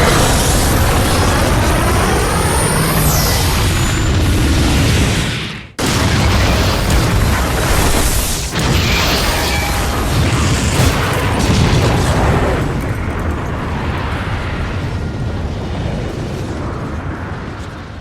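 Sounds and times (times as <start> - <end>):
long rumbling explosion: 0.0 - 18.0.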